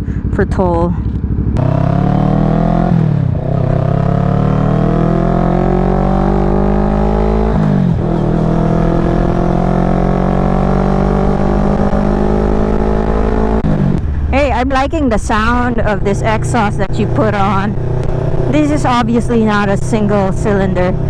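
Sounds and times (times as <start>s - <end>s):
motorcycle engine accelerating: 0.0s - 21.0s.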